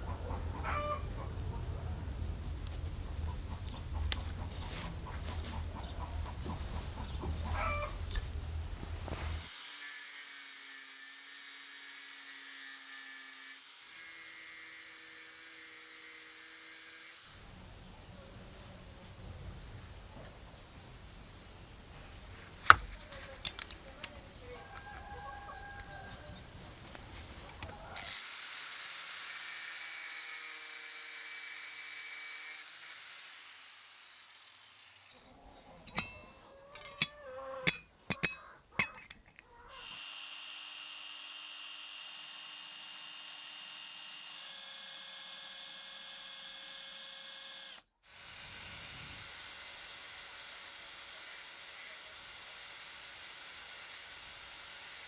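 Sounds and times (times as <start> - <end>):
small power tool whining: 0.4 - 17.4, 21.9 - 37.8, 39.3 - 55.0
small parts clicking: 22.3 - 27.8, 35.9 - 39.5.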